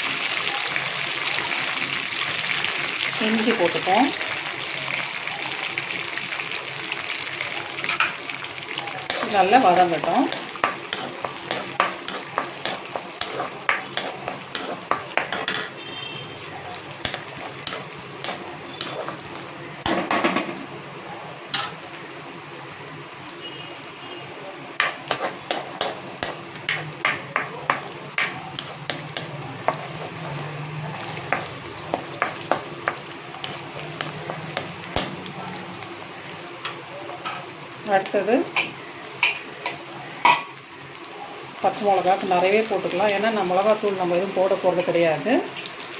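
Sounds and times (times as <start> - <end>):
aromatics sizzling in hot oil: 0.0 - 45.9
spatula scraping against pan: 9.0 - 16.4, 17.0 - 19.5, 24.8 - 35.2.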